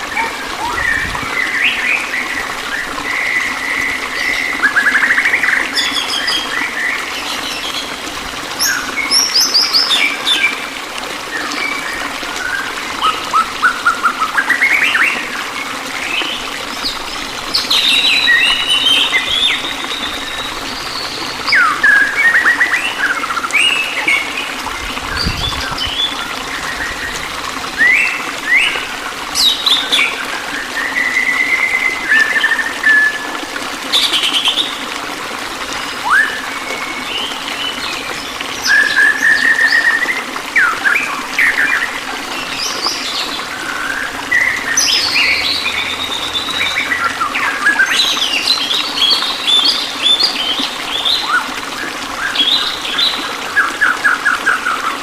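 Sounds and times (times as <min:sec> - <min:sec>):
running water hiss: 0:00.0 - 0:55.0
songbirds chirping and whistling: 0:16.2 - 0:24.4.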